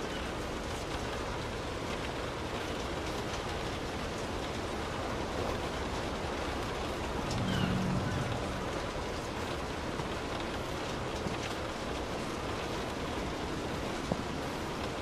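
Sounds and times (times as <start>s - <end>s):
rain on a car roof: 0.0s - 15.0s
low rumble: 7.1s - 9.6s.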